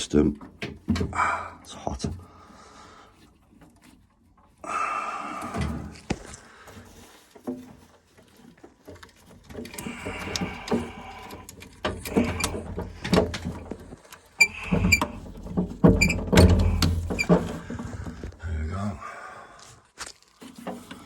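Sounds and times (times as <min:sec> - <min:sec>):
clicks and knocks: 0:11.6 - 0:17.8
brief squeaks: 0:16.0 - 0:17.3.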